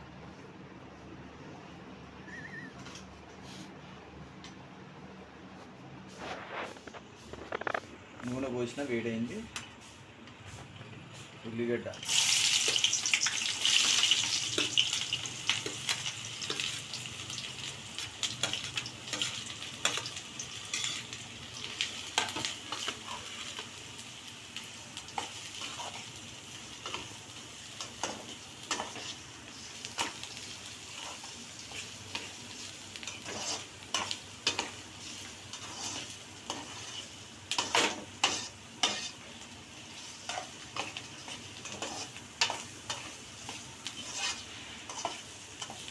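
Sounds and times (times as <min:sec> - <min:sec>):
onions sizzling in hot oil: 0:11.5 - 0:45.9
spatula scraping pan: 0:33.0 - 0:45.9.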